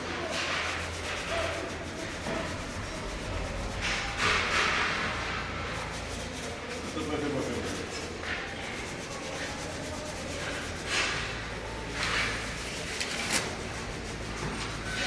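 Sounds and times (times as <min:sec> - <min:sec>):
cloth rubbing on metal: 0:00.3 - 0:15.0.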